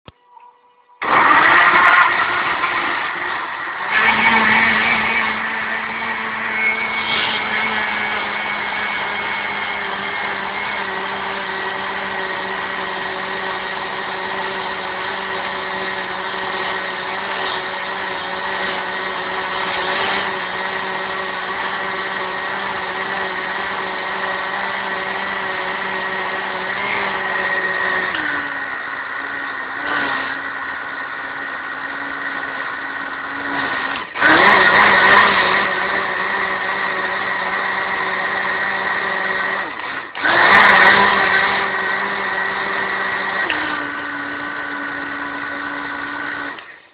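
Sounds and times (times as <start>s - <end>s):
blender motor whining: 0.9s - 46.9s.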